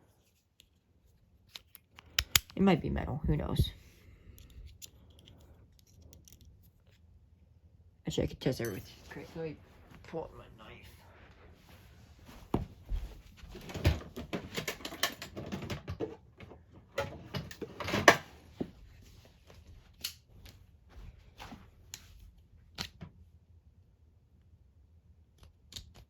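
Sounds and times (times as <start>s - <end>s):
knife and padlock clicking: 1.5s - 2.6s.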